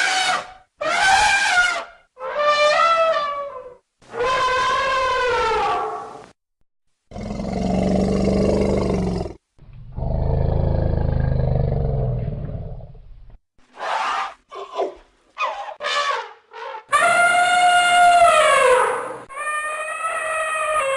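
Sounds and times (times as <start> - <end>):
elephant trumpeting: 0.0 - 6.1, 15.4 - 20.9.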